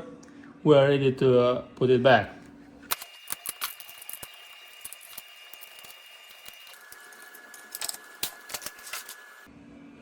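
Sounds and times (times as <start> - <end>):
small parts clicking and tapping: 2.9 - 9.3.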